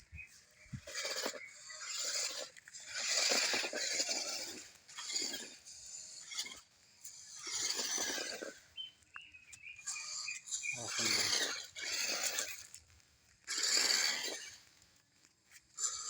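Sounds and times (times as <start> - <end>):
rc car motor whirring: 0.8 - 8.6, 9.8 - 12.7.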